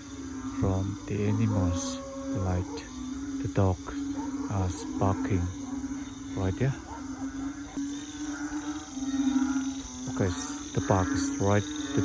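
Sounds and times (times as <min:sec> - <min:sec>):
faint drawn-out animal call: 0:00.0 - 0:12.0
frogs droning: 0:00.0 - 0:12.0
insects chirring: 0:00.0 - 0:12.0.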